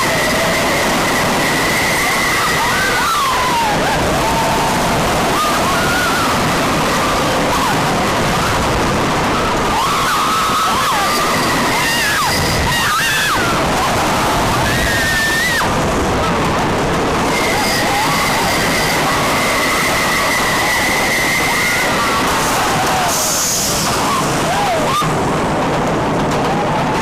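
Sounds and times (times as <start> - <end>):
roller coaster train on track: 0.0 - 27.0
wind roaring on microphone: 0.0 - 27.0
high squeal: 9.7 - 15.7, 17.3 - 25.1.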